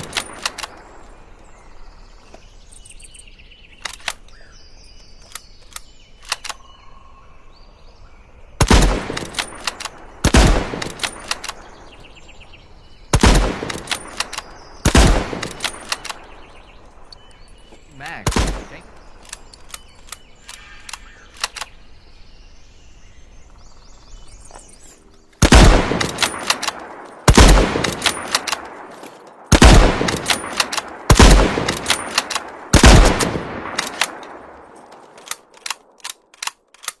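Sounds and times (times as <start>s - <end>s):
faint rifle clicks: 0.0s - 1.2s, 2.2s - 6.7s, 9.1s - 12.1s, 13.6s - 22.0s, 24.4s - 37.0s
rifle shots with echo: 8.6s - 11.9s, 13.1s - 16.5s, 18.2s - 19.0s, 25.4s - 34.8s.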